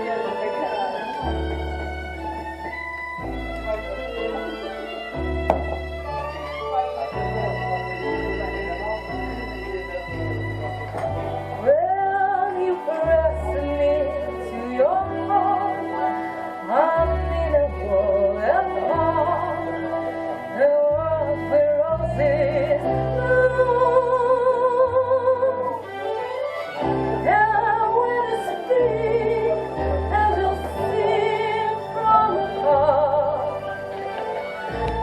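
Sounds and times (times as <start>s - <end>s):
sustained bass notes: 28.8s - 35.0s.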